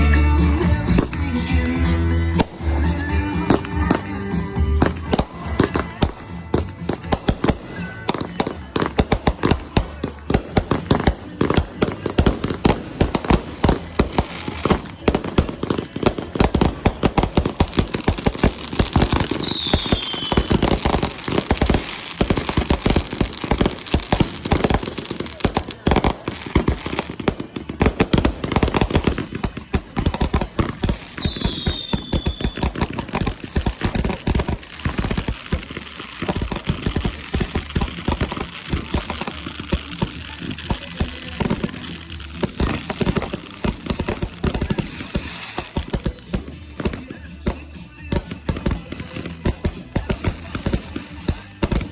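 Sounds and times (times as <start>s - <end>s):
fireworks banging and crackling: 0.0s - 51.9s
falling firework whistle: 19.3s - 20.7s, 31.1s - 32.8s.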